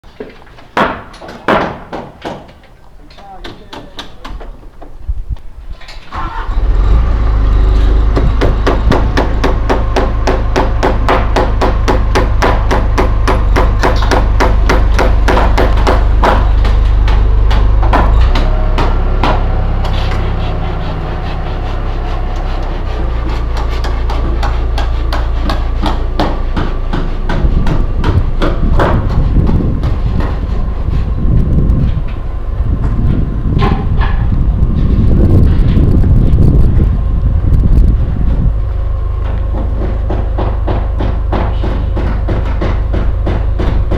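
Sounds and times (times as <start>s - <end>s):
rapid hammering: 0.8s - 2.6s, 8.2s - 31.1s, 39.5s - 43.9s
low engine drone: 6.4s - 43.9s.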